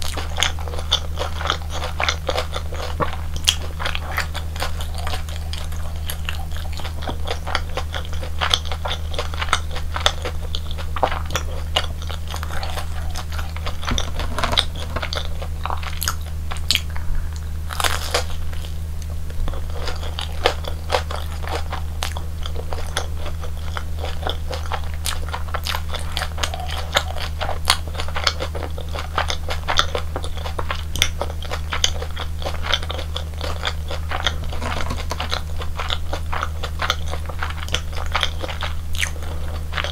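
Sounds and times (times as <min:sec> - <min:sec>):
crunching and chewing: 0:00.0 - 0:39.9
steady low hum: 0:00.0 - 0:39.9.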